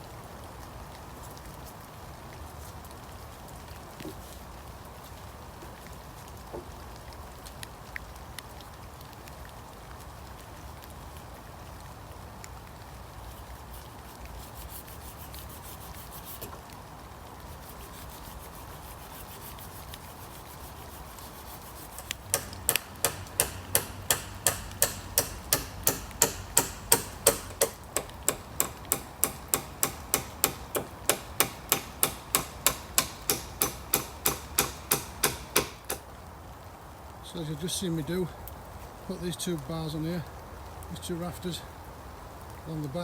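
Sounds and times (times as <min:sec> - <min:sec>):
rain: 0:00.0 - 0:43.0
hammer driving nails into wood: 0:21.8 - 0:36.0.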